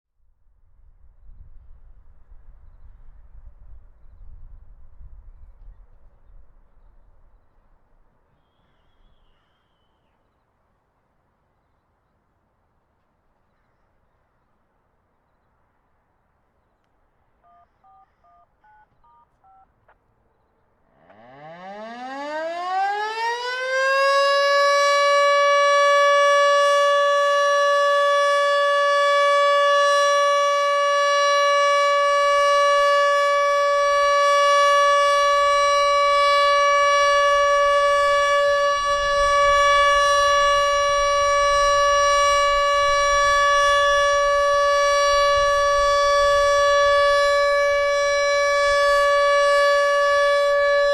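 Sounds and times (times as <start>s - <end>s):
faint short beeps: 17.4s - 19.7s
warning siren winding up: 21.0s - 50.9s.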